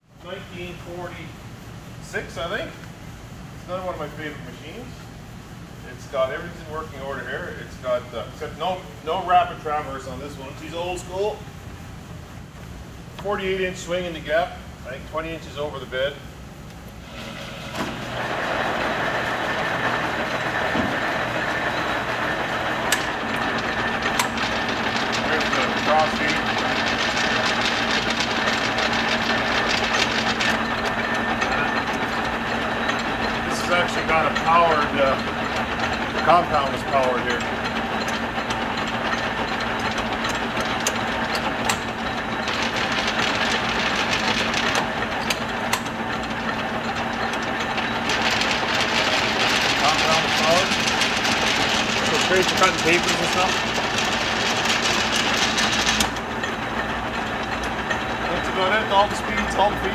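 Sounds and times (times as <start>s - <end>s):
lathe whirring: 17.0s - 59.9s.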